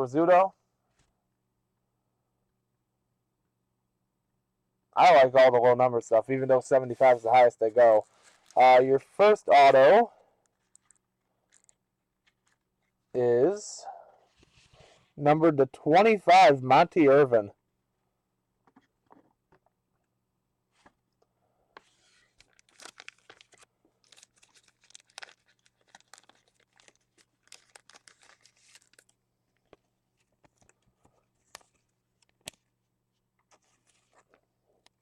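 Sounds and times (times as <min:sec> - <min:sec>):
foil wrapper crinkling and tearing: 0:08.0 - 0:08.6, 0:10.6 - 0:12.6, 0:22.0 - 0:29.2
cards being handled: 0:10.5 - 0:12.9, 0:21.8 - 0:32.7, 0:33.4 - 0:34.4.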